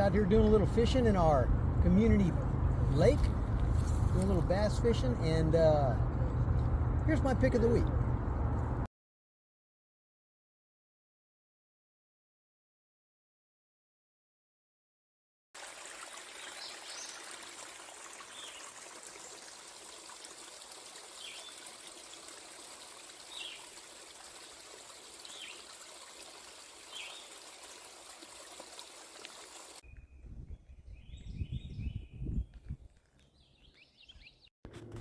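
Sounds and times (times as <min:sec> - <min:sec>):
creek water flowing: 0:00.0 - 0:08.9, 0:15.6 - 0:29.8
low rumble: 0:00.0 - 0:08.9
birdsong: 0:21.1 - 0:22.2, 0:23.3 - 0:23.7, 0:25.2 - 0:25.7, 0:26.9 - 0:27.4, 0:29.9 - 0:32.6, 0:33.2 - 0:34.5
bird chirping: 0:26.9 - 0:27.3, 0:33.2 - 0:34.5.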